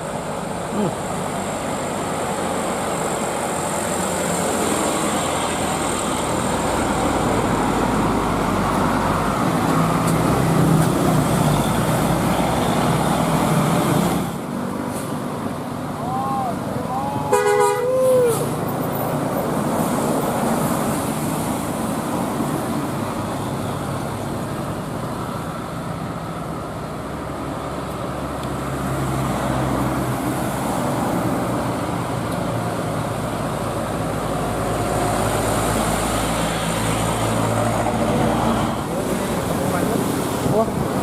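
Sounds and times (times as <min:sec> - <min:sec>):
bus engine humming: 0:00.0 - 0:41.0
road noise: 0:00.0 - 0:41.0.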